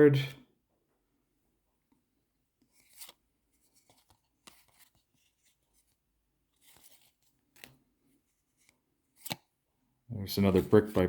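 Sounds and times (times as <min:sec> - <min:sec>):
trading cards clicking and rustling: 0:02.6 - 0:05.9, 0:06.6 - 0:07.8.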